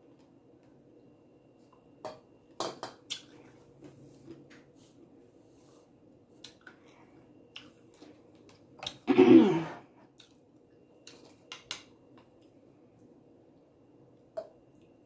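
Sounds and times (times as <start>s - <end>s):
person clearing throat: 9.1s - 9.8s.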